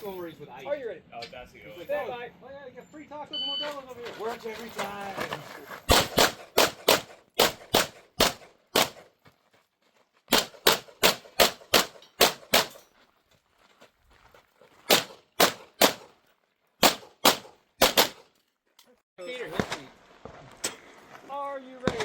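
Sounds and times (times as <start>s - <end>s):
pistol shots: 5.9s - 9.1s, 10.3s - 12.8s, 14.9s - 16.1s, 16.8s - 18.3s.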